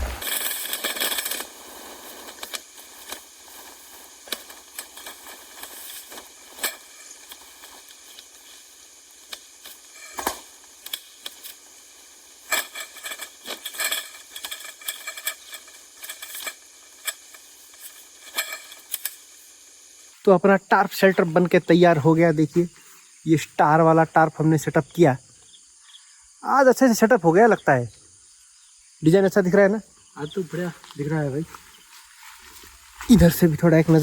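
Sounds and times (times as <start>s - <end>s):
clicks and rustles of tarp: 0.0s - 19.6s
faint steady hiss: 0.0s - 34.0s.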